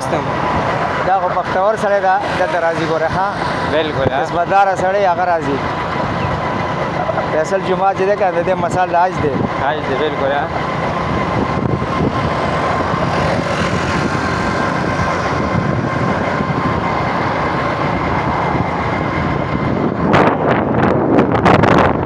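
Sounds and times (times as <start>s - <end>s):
road vehicle rumble: 0.0s - 22.0s
wind gusts on microphone: 10.8s - 22.0s.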